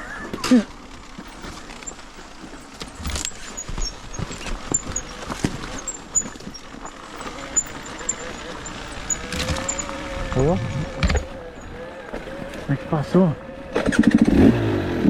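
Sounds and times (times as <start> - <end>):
motorcycle knocking and clattering on rocks: 0.3 - 12.7.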